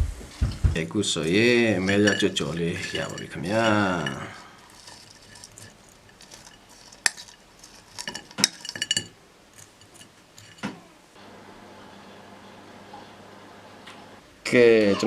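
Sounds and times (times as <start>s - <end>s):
cutlery and dishes clinking: 1.2s - 10.9s.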